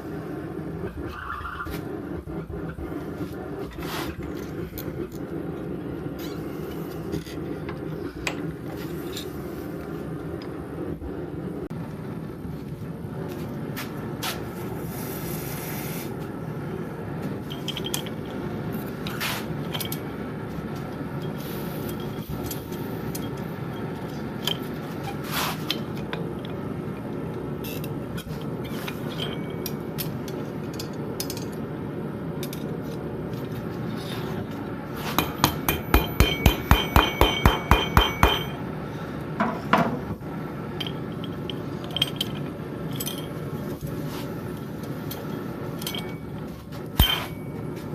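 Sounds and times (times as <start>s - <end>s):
tools clinking: 17.5s - 18.4s, 19.6s - 20.1s, 27.6s - 31.6s, 35.1s - 38.6s, 40.8s - 43.8s, 44.8s - 47.9s
hammer striking metal on anvil: 35.1s - 38.6s, 47.0s - 47.7s.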